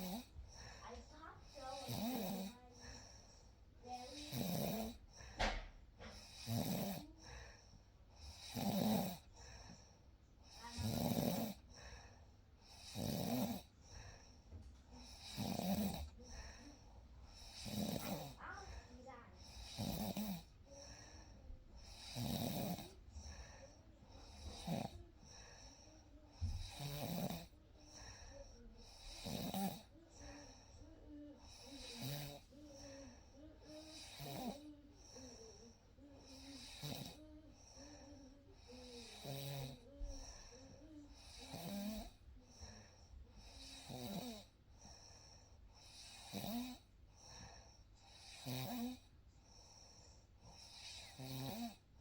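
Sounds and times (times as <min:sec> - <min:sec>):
person snoring: 0:00.0 - 0:03.0, 0:03.9 - 0:05.0, 0:06.1 - 0:07.4, 0:08.2 - 0:09.3, 0:10.5 - 0:11.7, 0:12.7 - 0:13.7, 0:15.0 - 0:18.7, 0:19.4 - 0:21.0, 0:21.8 - 0:42.2, 0:43.4 - 0:44.5, 0:45.9 - 0:46.8, 0:50.5 - 0:51.8.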